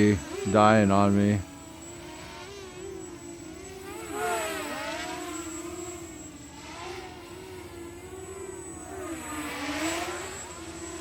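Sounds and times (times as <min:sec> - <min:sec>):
drone propellers whining: 0:00.0 - 0:11.0.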